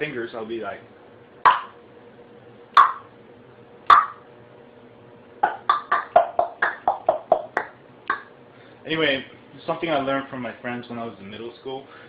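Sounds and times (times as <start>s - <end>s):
tongue clicks: 1.5s - 1.8s, 2.8s - 3.1s, 3.9s - 4.2s.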